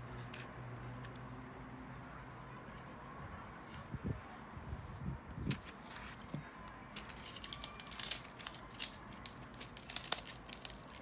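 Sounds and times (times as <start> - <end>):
plastic clicks and crackles: 6.3 - 11.0.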